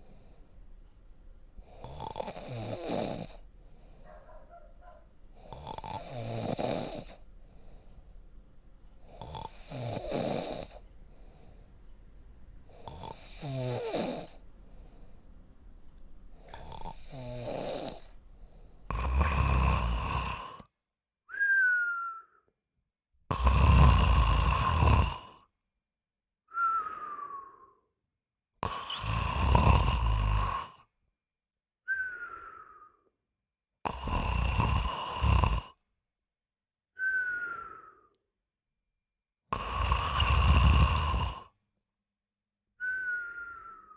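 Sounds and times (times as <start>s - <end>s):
person snoring: 1.6s - 3.5s, 5.4s - 7.7s, 9.0s - 10.9s, 12.7s - 14.4s, 16.3s - 18.2s, 18.9s - 20.7s, 23.3s - 25.5s, 28.6s - 30.8s, 33.9s - 35.8s, 39.5s - 41.5s
rasping snores: 1.6s - 7.2s, 9.0s - 10.9s, 12.7s - 14.4s, 16.4s - 18.2s, 18.9s - 20.7s, 23.3s - 25.5s, 28.6s - 30.9s, 33.9s - 35.8s, 39.5s - 41.6s.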